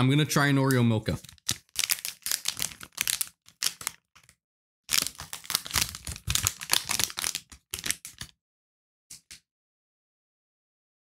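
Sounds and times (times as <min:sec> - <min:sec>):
snack wrapper crinkling and tearing: 0:01.1 - 0:08.3.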